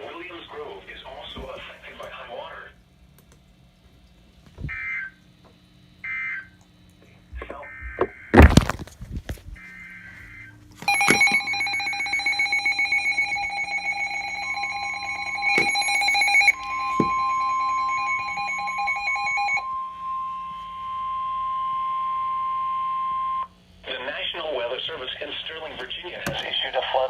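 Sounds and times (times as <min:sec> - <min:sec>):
rapidly pulsing alarm beep: 0:06.0 - 0:06.5, 0:09.6 - 0:23.5
steady warning tone: 0:09.5 - 0:27.0.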